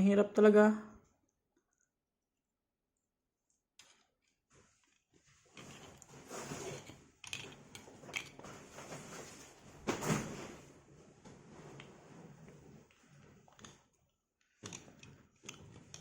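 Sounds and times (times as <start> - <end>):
wires scraping and rustling: 3.8 - 16.0.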